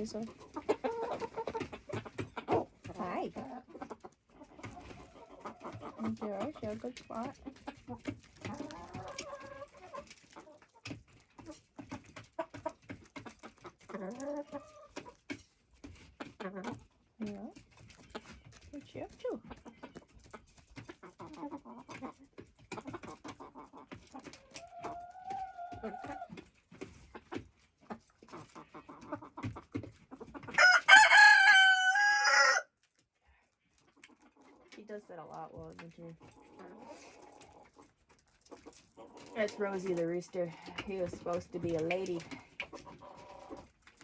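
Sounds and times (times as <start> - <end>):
chickens clucking: 0.0 - 44.0
rooster crowing: 30.6 - 32.7.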